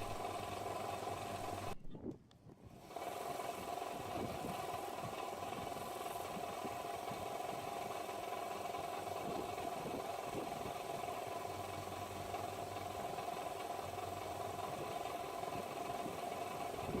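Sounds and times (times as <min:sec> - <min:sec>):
electric buffing wheel running: 0:00.0 - 0:01.8.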